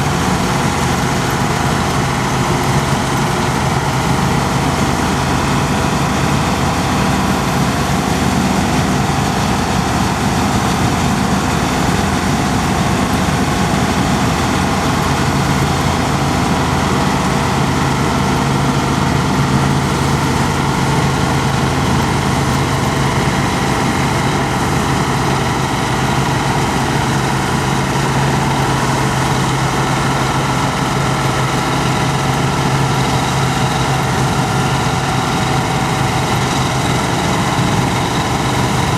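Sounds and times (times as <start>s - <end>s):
combine harvester droning: 0.0s - 38.9s.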